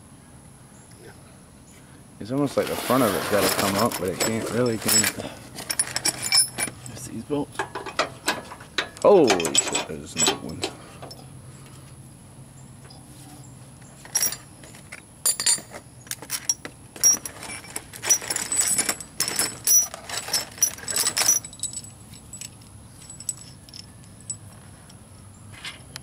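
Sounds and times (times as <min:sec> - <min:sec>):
steel bolts clinking and rattling: 0:03.2 - 0:11.3, 0:14.0 - 0:25.0.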